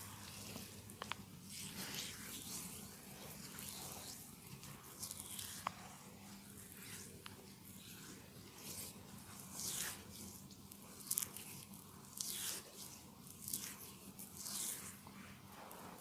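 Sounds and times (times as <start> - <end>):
soft swishing skin rubbing: 0.0 - 16.0.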